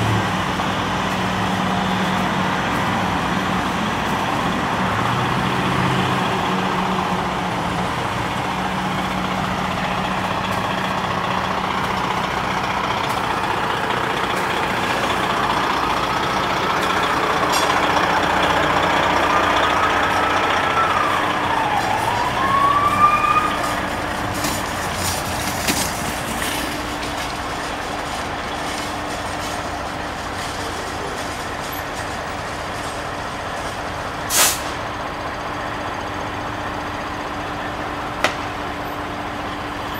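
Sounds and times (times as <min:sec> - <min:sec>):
diesel engines idling: 0:00.0 - 0:39.9
short sharp hiss: 0:34.3 - 0:34.8.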